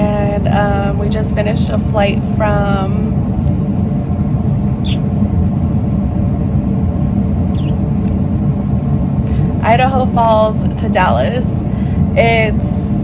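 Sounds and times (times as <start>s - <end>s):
low background rumble: 0.0s - 13.0s
high chirps: 4.8s - 5.0s, 7.6s - 7.8s.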